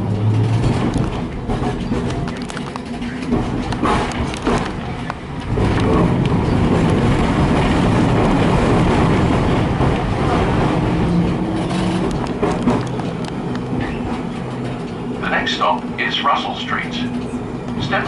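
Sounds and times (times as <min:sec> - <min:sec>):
tram wheels rumbling on rail: 0:00.0 - 0:18.0.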